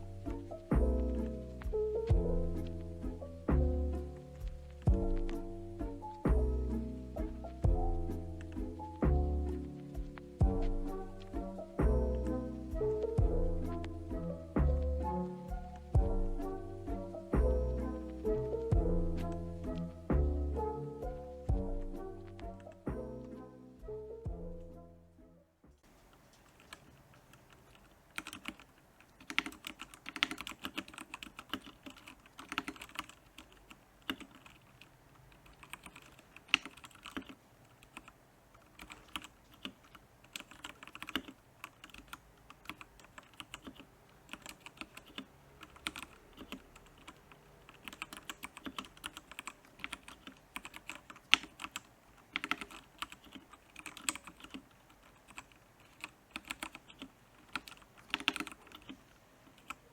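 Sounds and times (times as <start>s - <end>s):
mechanical keyboard typing: 26.1s - 59.9s.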